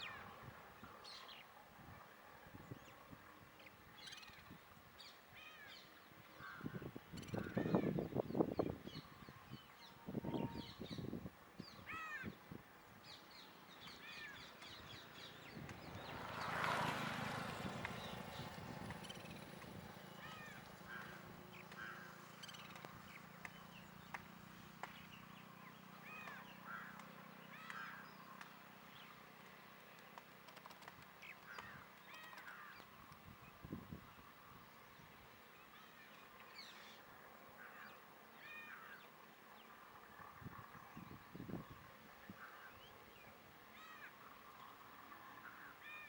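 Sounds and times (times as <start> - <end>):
birds chirping: 3.6 - 37.0.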